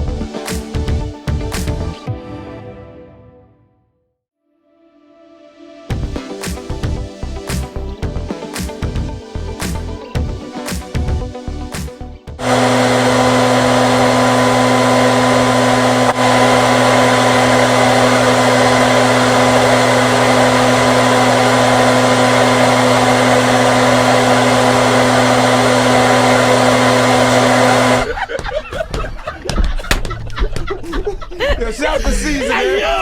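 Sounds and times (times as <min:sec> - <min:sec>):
hair dryer running: 0:12.4 - 0:28.1.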